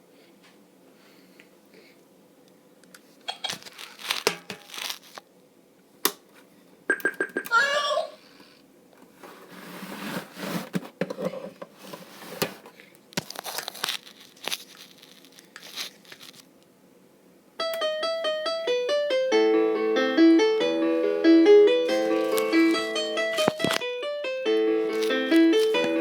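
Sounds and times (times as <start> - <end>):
rustling handling noise: 3.0 - 5.3, 9.0 - 16.6, 21.9 - 23.9, 24.9 - 26.0
toy electronic keyboard tune: 17.6 - 26.0.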